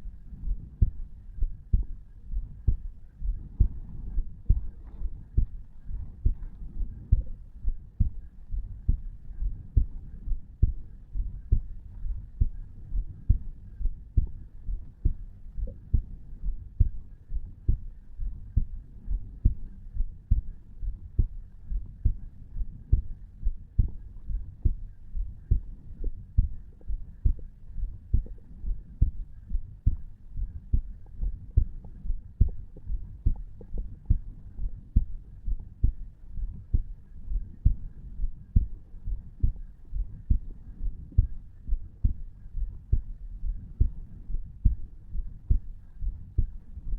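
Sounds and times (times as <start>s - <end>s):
heartbeat thumps: 0.0s - 46.9s.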